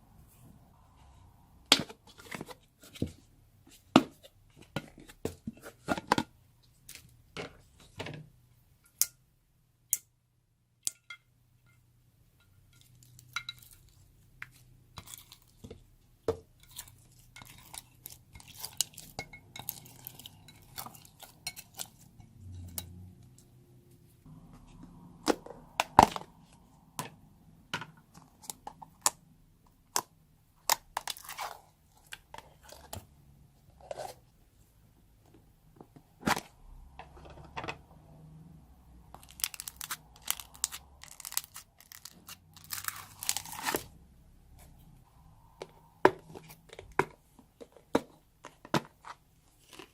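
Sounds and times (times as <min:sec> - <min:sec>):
slime crunching and popping: 0:39.2 - 0:43.9.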